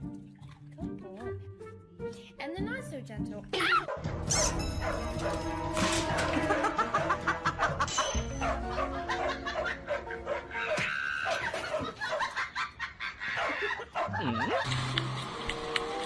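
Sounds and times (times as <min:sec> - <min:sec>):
person laughing: 0:06.2 - 0:07.9, 0:11.2 - 0:14.8.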